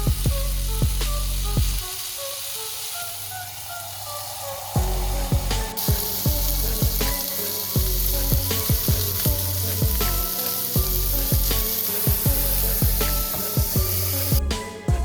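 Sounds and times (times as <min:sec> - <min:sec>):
food sizzling in a frying pan: 0:00.0 - 0:14.4
background music with deep beat: 0:00.0 - 0:15.0.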